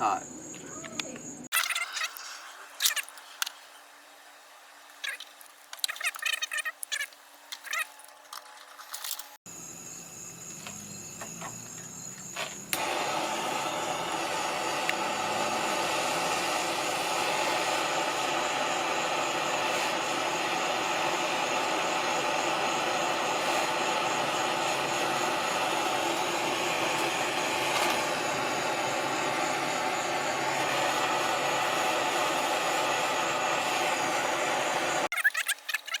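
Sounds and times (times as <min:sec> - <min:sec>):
torch burning with hiss: 0:12.6 - 0:35.1.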